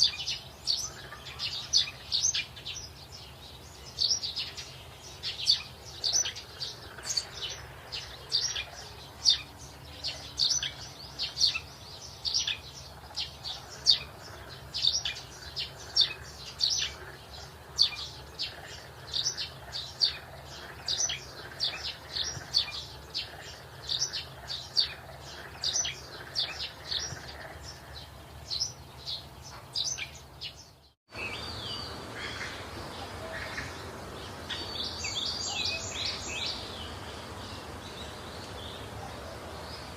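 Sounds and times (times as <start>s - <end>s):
background hiss: 0.0s - 39.9s
bird chirping: 0.0s - 39.9s
soft birdsong: 0.0s - 39.9s.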